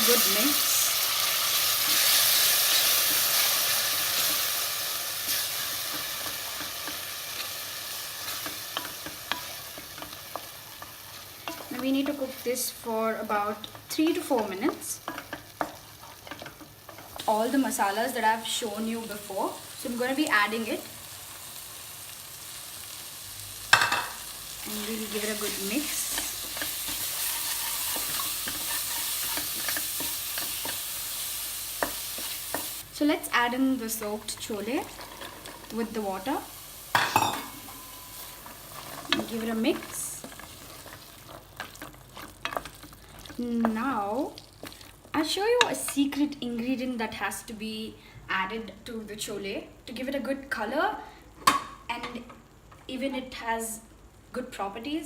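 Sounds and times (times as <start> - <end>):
tomato puree sizzling in oil: 0.0 - 47.6
spoon scraping and tapping pan: 36.9 - 41.0.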